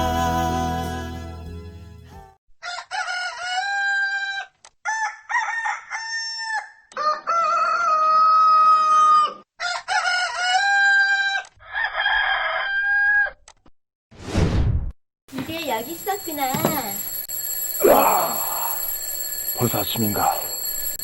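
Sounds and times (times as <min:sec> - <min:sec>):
rooster crowing: 0:02.6 - 0:13.4.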